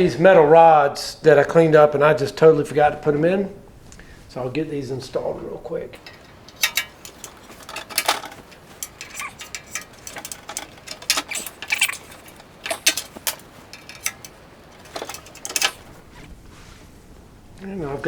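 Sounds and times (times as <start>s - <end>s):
metal rods clinking on tool chest: 6.0s - 16.1s.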